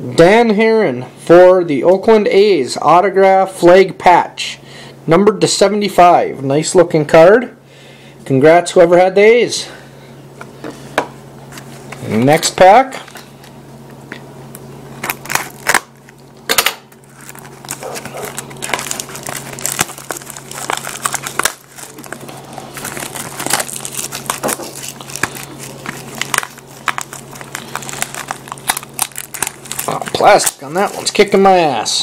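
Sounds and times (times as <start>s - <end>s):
plastic wrap crinkling: 14.9s - 31.9s.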